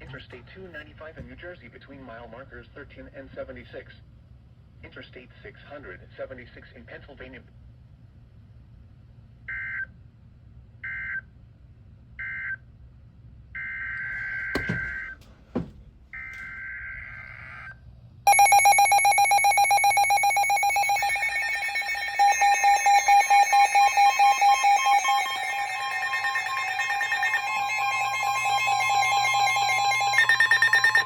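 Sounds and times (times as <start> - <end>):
steady alert tone: 18.3 - 31.0.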